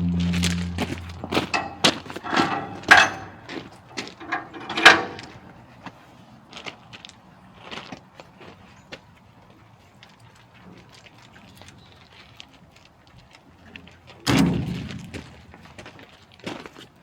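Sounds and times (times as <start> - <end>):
sharp metal clanks and knocks: 0.0 - 5.5.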